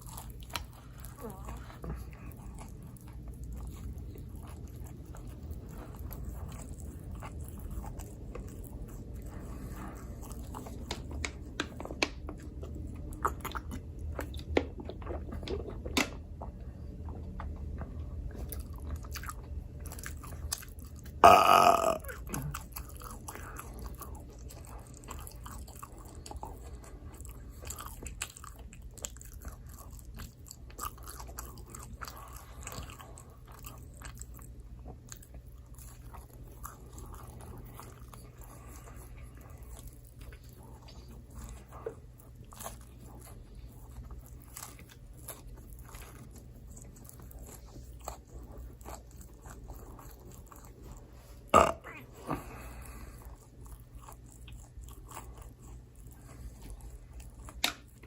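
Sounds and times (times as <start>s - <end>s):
chewing and biting pizza: 0.0s - 58.0s
loud burp: 21.2s - 22.2s, 51.6s - 52.0s.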